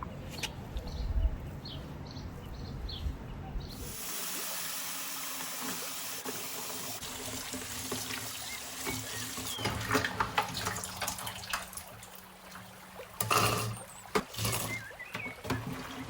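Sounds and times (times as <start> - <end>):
water running from tap into sink: 3.8 - 16.0.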